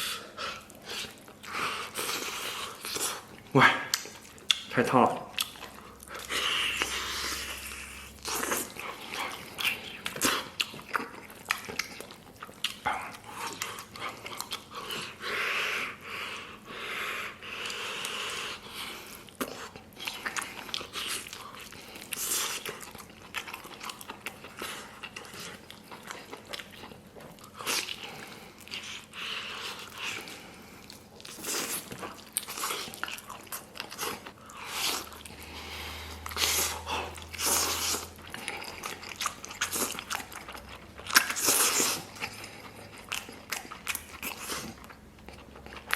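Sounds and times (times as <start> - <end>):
mouth smacking: 0.0 - 15.1
person biting and chewing meat: 0.0 - 15.3, 17.3 - 45.9.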